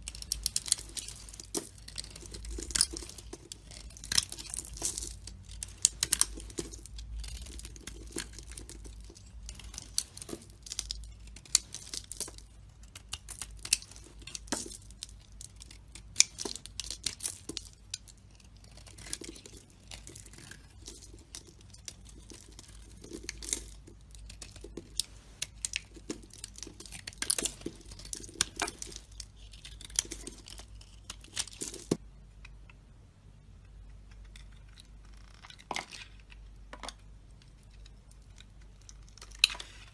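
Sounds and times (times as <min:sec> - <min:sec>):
knife scraping bar soap: 0:00.0 - 0:12.2, 0:15.6 - 0:31.6, 0:34.0 - 0:36.4.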